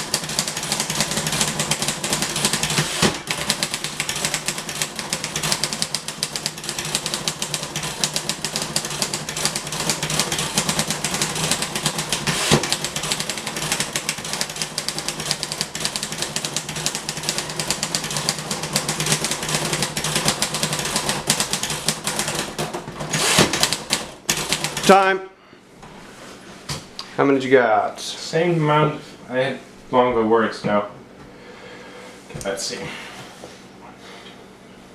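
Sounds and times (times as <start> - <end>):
heavy typewriter clunk: 0.0 - 25.0
fast typewriter typing: 0.0 - 25.1.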